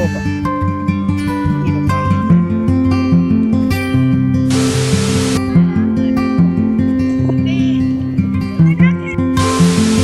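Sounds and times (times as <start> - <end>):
guitar-led music with bass: 0.0 - 10.0.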